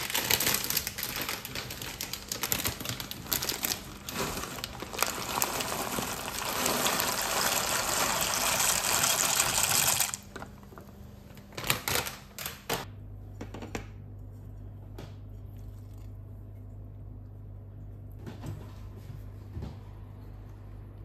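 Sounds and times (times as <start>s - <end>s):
steady low hum: 12.8s - 21.0s.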